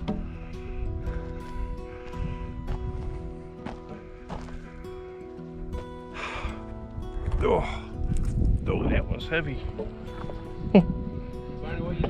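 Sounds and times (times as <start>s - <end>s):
background music with held notes: 0.0s - 12.0s.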